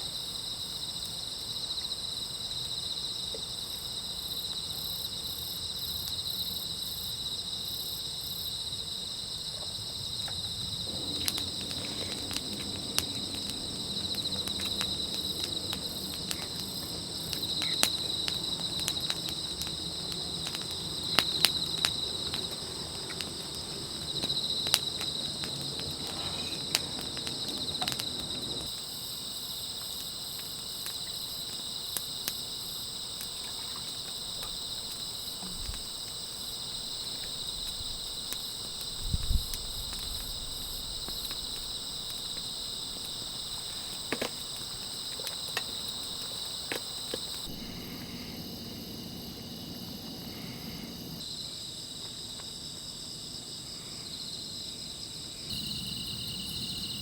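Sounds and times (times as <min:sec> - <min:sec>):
insects chirring: 0:00.0 - 0:57.0
low rumble: 0:10.6 - 0:28.7.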